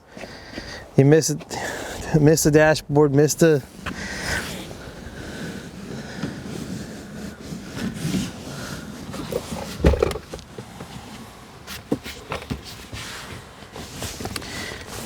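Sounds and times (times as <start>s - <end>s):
car seat scraping and rustling: 3.6s - 15.0s
heavy thump: 9.8s - 10.4s.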